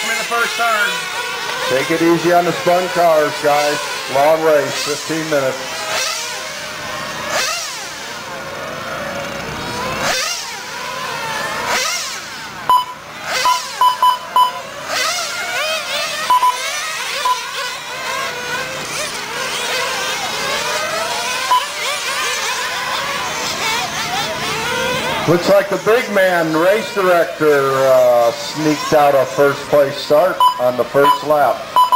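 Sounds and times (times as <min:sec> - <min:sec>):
rc car engines whining: 0:00.0 - 0:31.9
loud electronic beeps: 0:12.7 - 0:14.7, 0:16.2 - 0:17.6, 0:21.5 - 0:21.8, 0:30.4 - 0:31.9.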